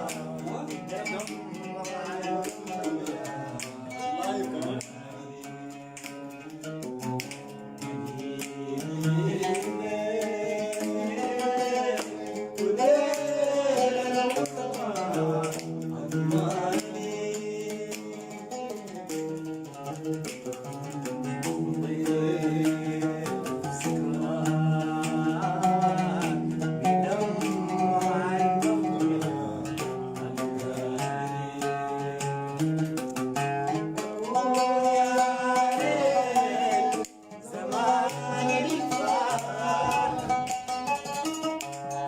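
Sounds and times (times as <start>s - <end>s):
gliding vocal melody: 0.0s - 6.2s, 7.9s - 18.5s, 34.0s - 41.7s
plucked strings: 0.0s - 42.0s.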